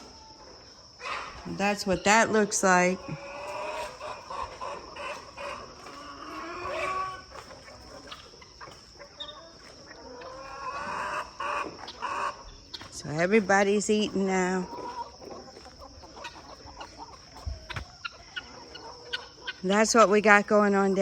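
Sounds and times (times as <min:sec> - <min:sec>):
chickens clucking: 0:00.0 - 0:21.0.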